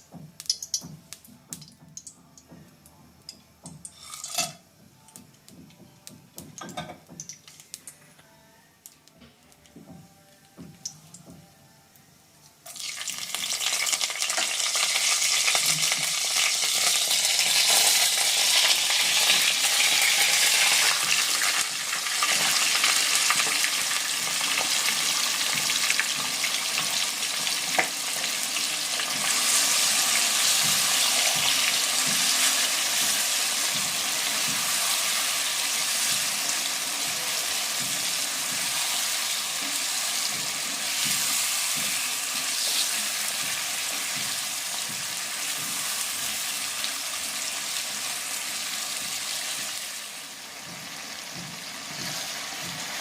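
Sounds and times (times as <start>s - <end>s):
food sizzling in hot oil: 0.0s - 0.9s, 12.7s - 53.0s.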